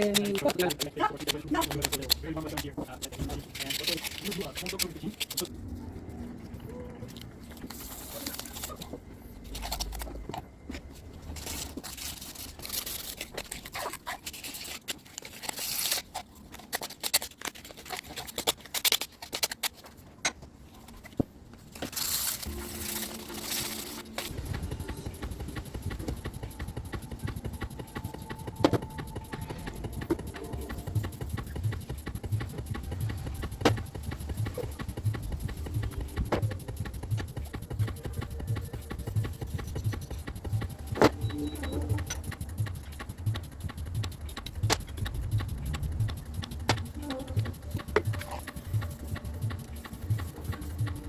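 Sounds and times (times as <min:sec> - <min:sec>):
scraping and rubbing: 0:00.0 - 0:51.0
low hum: 0:21.9 - 0:51.0.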